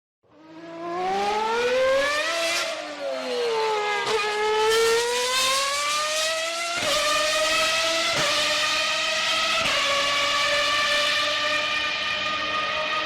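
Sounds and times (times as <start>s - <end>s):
race car engine at high revs: 0.2s - 13.0s.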